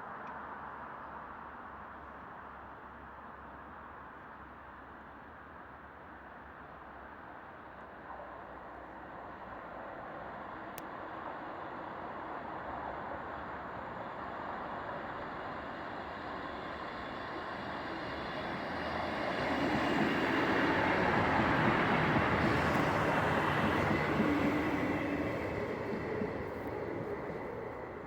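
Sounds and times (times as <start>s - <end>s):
diesel train engine: 13.4s - 28.0s
train wheels on rails: 14.9s - 28.0s.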